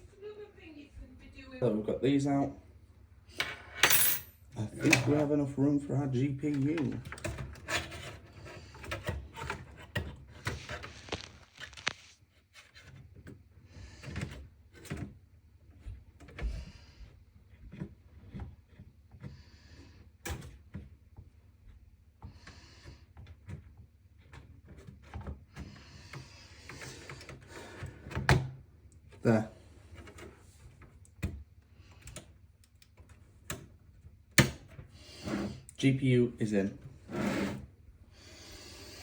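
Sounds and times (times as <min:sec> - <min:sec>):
metal and plastic scraping: 0:06.6 - 0:13.3.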